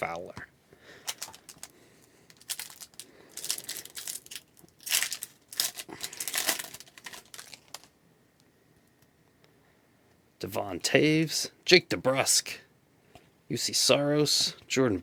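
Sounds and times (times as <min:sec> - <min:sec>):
wrapper tearing and crinkling: 0:01.1 - 0:01.7, 0:02.3 - 0:07.9.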